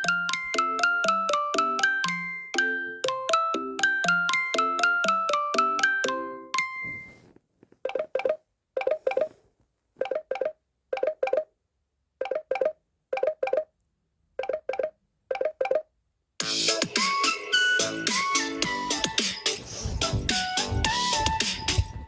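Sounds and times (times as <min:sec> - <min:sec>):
phone ringtone plucked notes: 0:00.0 - 0:07.2.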